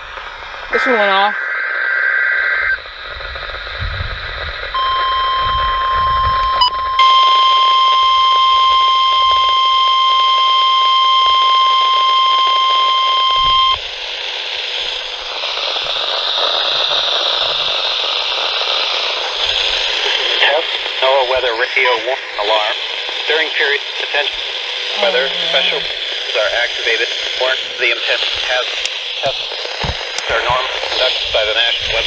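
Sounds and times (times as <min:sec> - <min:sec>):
weather radio alarm tone: 0:00.0 - 0:03.2, 0:04.7 - 0:13.8, 0:14.6 - 0:22.5, 0:23.8 - 0:29.4
radio static hiss: 0:00.0 - 0:32.0.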